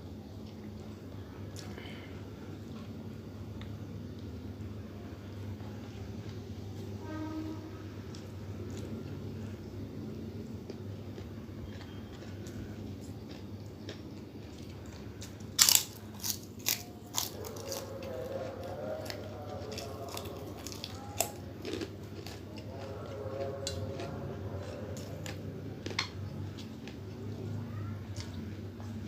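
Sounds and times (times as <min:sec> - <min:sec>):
person chewing crunchy food: 0:08.1 - 0:09.3, 0:10.4 - 0:29.0.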